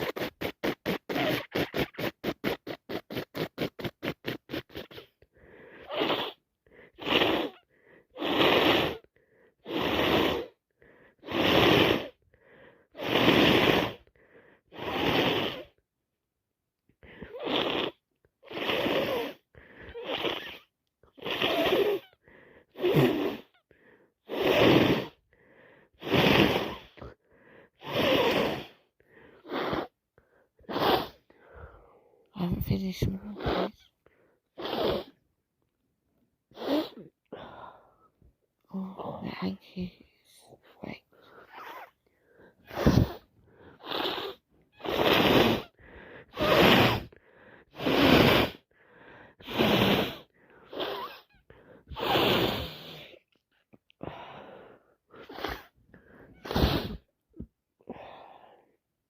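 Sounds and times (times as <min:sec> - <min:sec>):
handkerchief rubbing against nose: 0:00.0 - 0:05.0, 0:32.7 - 0:33.8, 0:41.3 - 0:42.0, 0:42.7 - 0:43.2, 0:43.8 - 0:45.7, 0:56.4 - 0:57.1
congested nasal breathing: 0:00.0 - 0:15.8, 0:17.0 - 0:35.2, 0:36.5 - 0:58.8.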